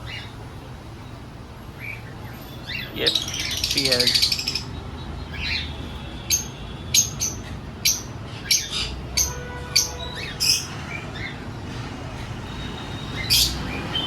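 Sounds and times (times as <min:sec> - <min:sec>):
cockatiels chirping: 0:06.4 - 0:11.4.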